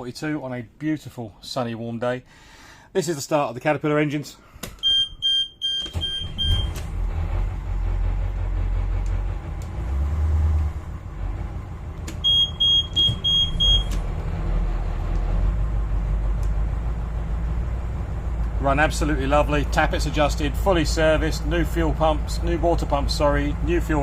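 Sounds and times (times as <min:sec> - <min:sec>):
diesel engines starting and idling: 0:04.6 - 0:24.0
warning alarm beeping: 0:04.8 - 0:06.8, 0:12.2 - 0:14.0.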